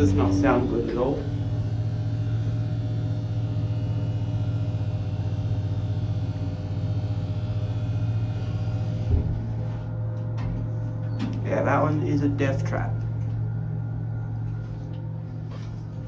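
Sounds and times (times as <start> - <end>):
hydraulic lift rumbling drone: 0.0 - 16.0.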